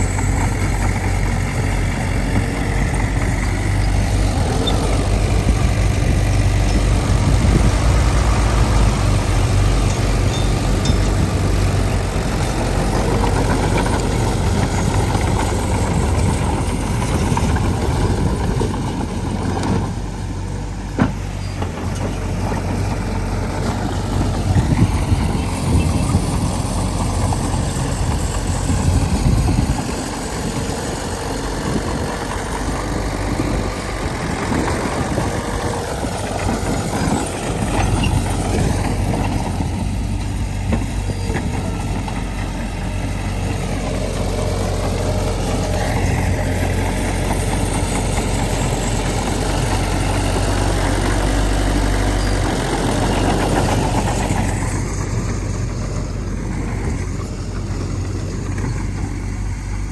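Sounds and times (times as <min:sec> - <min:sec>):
heavy diesel engine running: 0:00.0 - 0:59.9
rattling clatter: 0:00.1 - 0:20.2.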